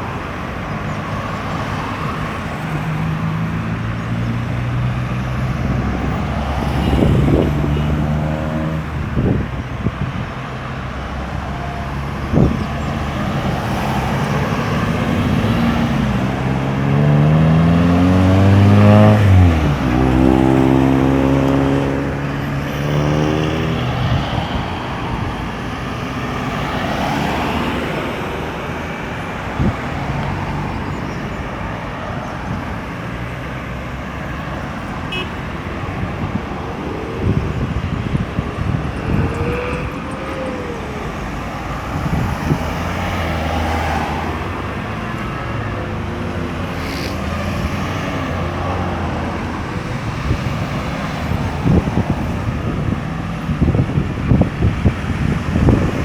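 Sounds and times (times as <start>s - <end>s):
road traffic: 0.0s - 56.0s
vehicle accelerating away: 2.8s - 9.0s, 11.8s - 29.0s.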